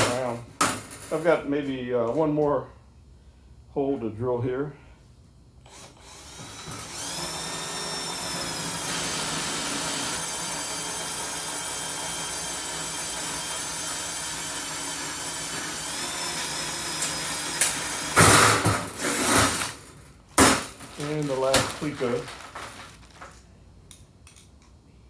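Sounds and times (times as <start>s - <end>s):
electric drill drilling metal: 5.7s - 20.0s, 20.6s - 23.4s.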